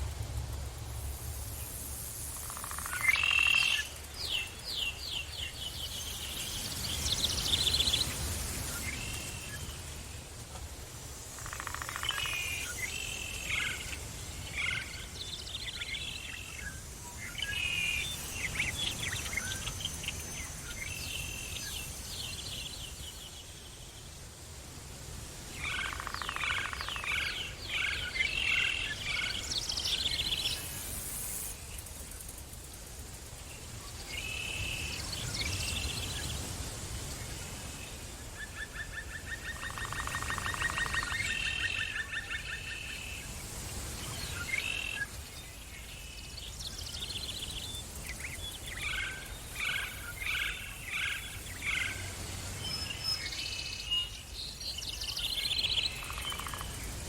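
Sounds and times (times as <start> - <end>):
steady low rumble: 0.0 - 2.8
songbirds chirping and trilling: 0.1 - 57.0.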